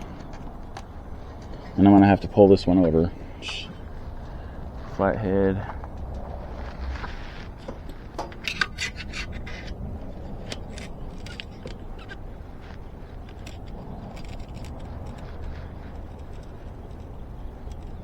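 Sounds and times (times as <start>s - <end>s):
low background rumble: 0.0s - 18.0s
metallic clicks and scrapes: 5.6s - 18.0s.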